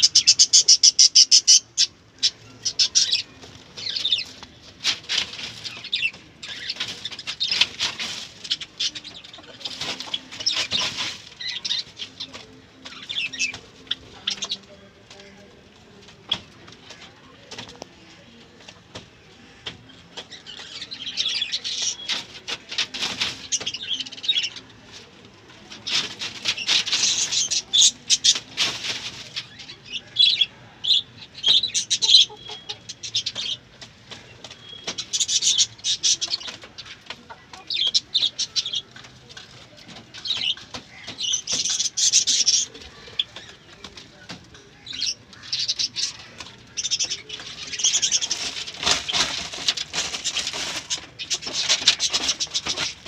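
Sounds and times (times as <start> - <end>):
chickens chirping: 0.0 - 53.0
chickens flapping wings: 47.7 - 53.0.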